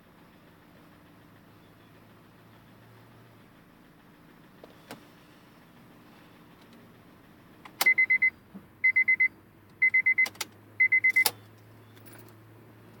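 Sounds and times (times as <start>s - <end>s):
car warning chime beeping: 7.8s - 11.5s.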